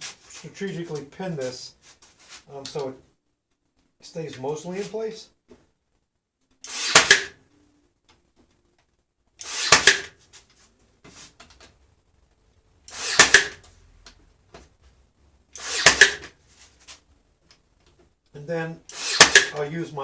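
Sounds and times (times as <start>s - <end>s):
pin nailer whir and snap: 6.6s - 7.4s, 9.4s - 10.2s, 12.9s - 13.6s, 15.6s - 16.3s, 18.9s - 19.6s.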